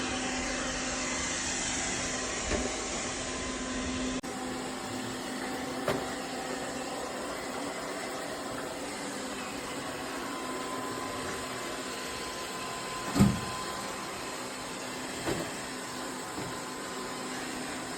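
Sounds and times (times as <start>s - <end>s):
robot vacuum whirring: 0.2s - 17.9s
thump: 13.1s - 13.5s.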